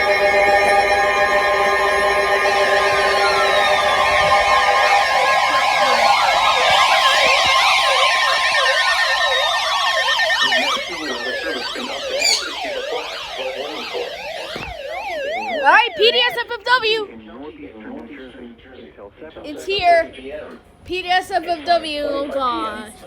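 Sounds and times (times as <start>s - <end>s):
slowly falling tones: 0.0s - 16.4s
warbling electronic alert tones: 0.0s - 16.6s.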